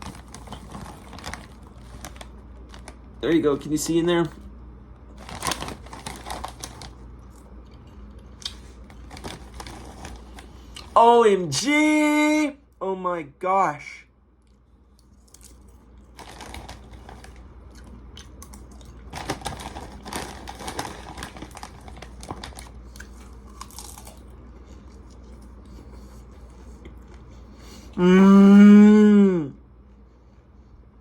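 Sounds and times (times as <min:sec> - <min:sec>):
person chewing crunchy popcorn: 0:00.0 - 0:03.1, 0:05.1 - 0:11.0, 0:14.4 - 0:28.0
person humming mmm: 0:28.0 - 0:29.6.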